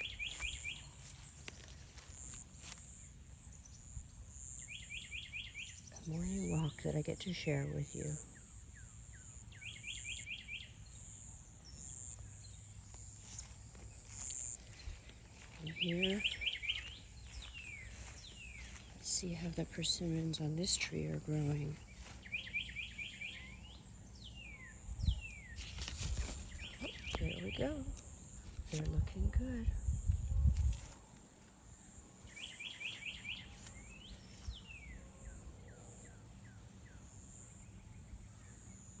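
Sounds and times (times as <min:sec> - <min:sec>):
bird chirping: 0:00.0 - 0:01.2, 0:04.4 - 0:06.7, 0:08.0 - 0:13.5, 0:14.2 - 0:27.9, 0:32.3 - 0:37.1
insects buzzing: 0:00.0 - 0:06.5, 0:08.0 - 0:28.8
songbird singing: 0:00.0 - 0:39.0.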